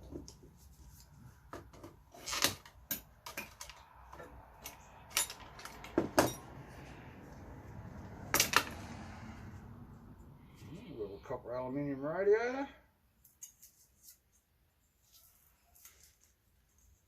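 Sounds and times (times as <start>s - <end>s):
small metal parts clinking: 4.6s - 6.5s.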